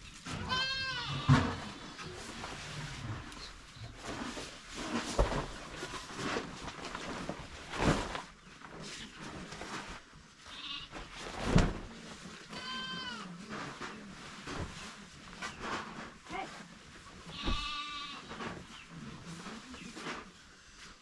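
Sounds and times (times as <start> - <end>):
sheep bleating: 17.4 - 18.2.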